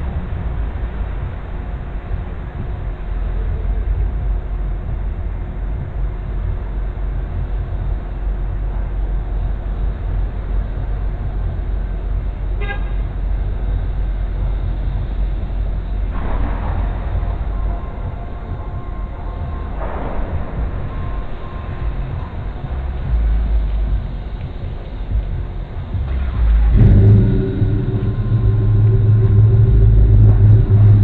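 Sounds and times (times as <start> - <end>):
vehicle engine idling: 22.7 - 31.0
loud noise: 26.2 - 31.0.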